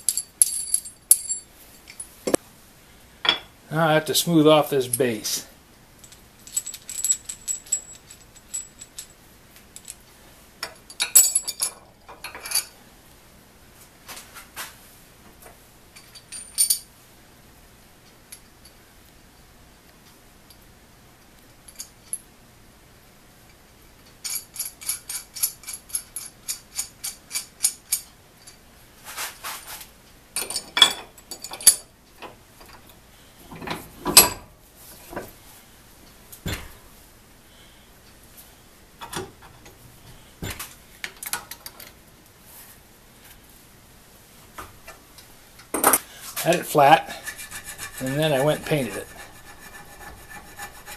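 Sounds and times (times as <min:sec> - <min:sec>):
metallic clinks and knocks: 0:00.0 - 0:02.4, 0:06.0 - 0:10.0, 0:10.6 - 0:12.8, 0:16.0 - 0:16.9, 0:30.4 - 0:32.8
hand file strokes on metal: 0:46.7 - 0:50.9.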